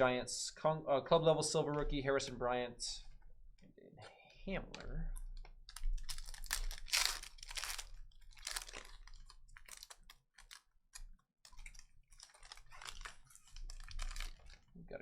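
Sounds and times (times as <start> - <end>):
trading cards rustling: 5.7 - 14.7.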